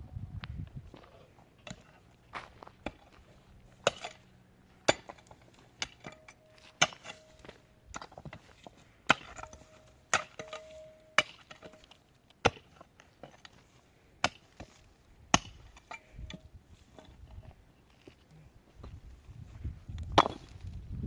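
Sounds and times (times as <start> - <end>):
hand tool striking wood: 4.9 - 8.4, 9.1 - 13.5.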